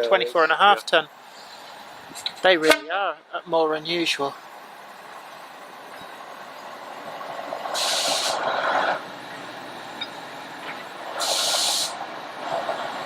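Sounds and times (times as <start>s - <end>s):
train carriage running noise: 0.0s - 13.0s
train air hisses: 1.2s - 2.0s, 7.5s - 9.0s, 11.0s - 13.0s.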